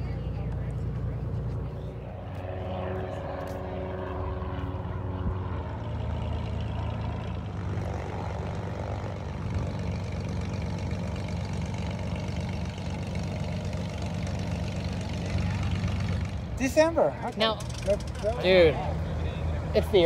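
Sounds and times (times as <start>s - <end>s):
propeller airplane engine drone: 0.0s - 20.0s.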